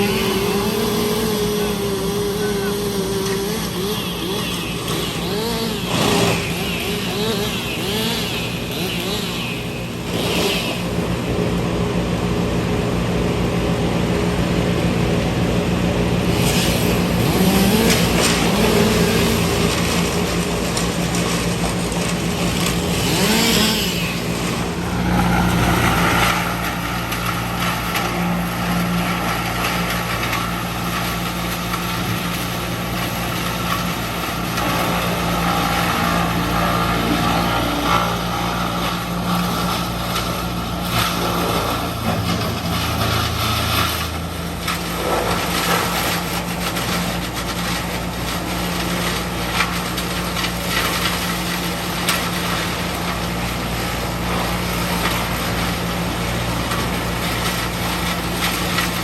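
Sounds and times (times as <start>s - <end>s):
machinery engine drone: 0.0s - 59.0s.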